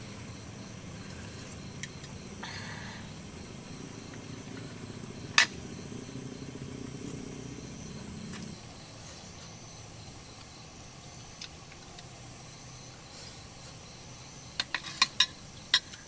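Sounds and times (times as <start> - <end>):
low rumbling noise: 0.0 - 9.0
crickets trilling: 0.0 - 16.0.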